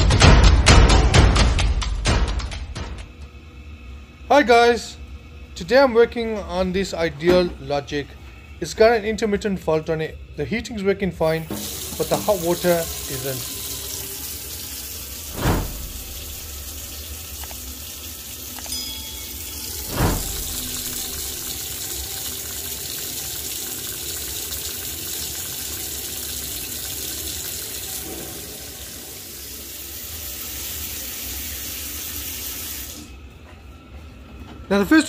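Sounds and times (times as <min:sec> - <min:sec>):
water running from tap: 0:11.4 - 0:33.1.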